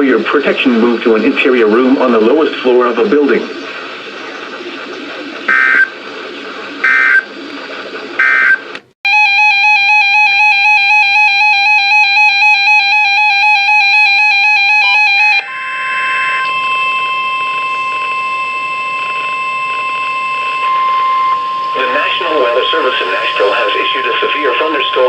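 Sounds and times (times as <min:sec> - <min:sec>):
buzzy warbling alarm tone: 0:00.4 - 0:06.0, 0:06.8 - 0:07.3, 0:08.2 - 0:25.0
steady single alarm tone: 0:05.5 - 0:05.9, 0:06.8 - 0:07.2, 0:08.2 - 0:25.0.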